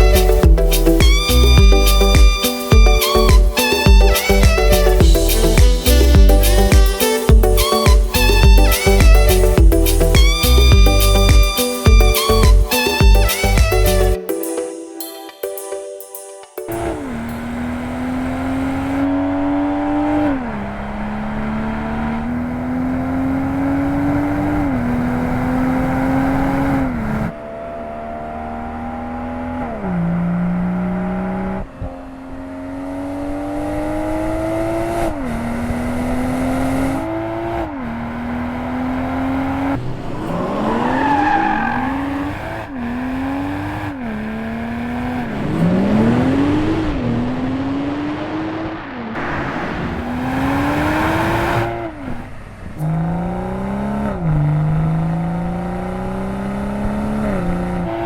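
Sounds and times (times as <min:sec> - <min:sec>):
car engine accelerating through gears: 0:17.0 - 0:58.0.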